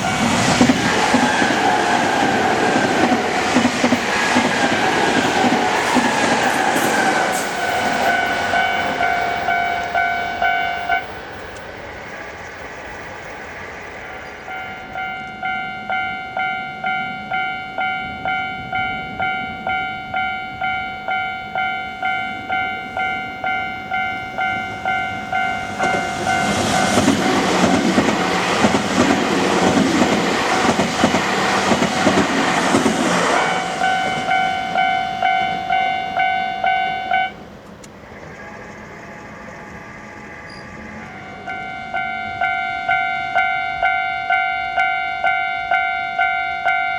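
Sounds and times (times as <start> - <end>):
train wheels clattering: 0.0 - 10.2, 25.4 - 35.6
level crossing alarm dings: 7.6 - 11.1, 14.5 - 27.0, 33.8 - 37.4, 41.4 - 46.9.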